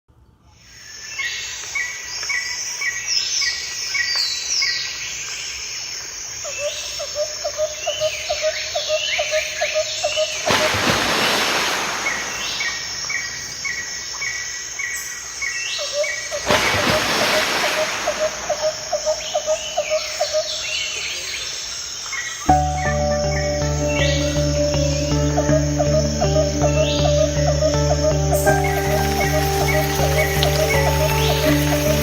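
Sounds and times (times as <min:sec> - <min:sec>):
birds chirping: 0:07.9 - 0:32.0
low rapid pulsing bird call: 0:22.4 - 0:32.0.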